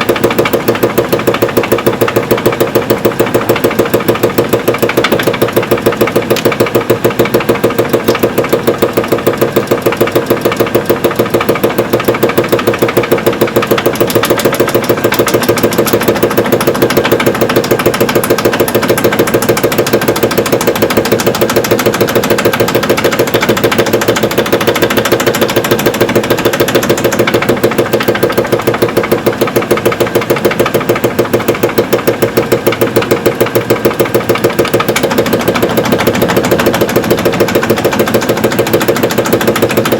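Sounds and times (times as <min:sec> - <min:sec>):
rapid regular bearing knocking: 0:00.0 - 0:39.9
washing machine drum spinning: 0:00.0 - 0:39.9.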